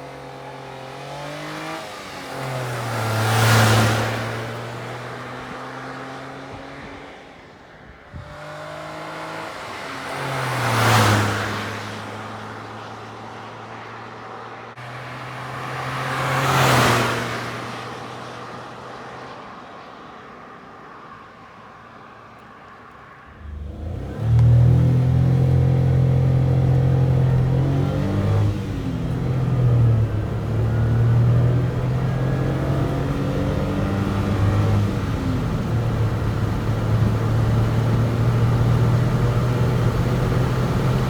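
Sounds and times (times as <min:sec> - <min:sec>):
vehicles passing: 0:00.0 - 0:41.0
car engine running: 0:23.3 - 0:41.0
engine revving sharply: 0:23.3 - 0:41.0.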